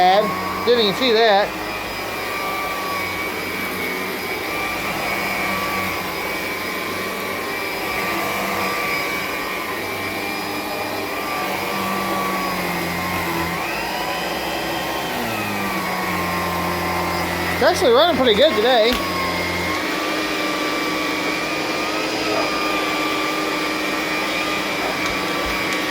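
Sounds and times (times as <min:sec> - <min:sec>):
vacuum cleaner running: 0:00.0 - 0:25.9.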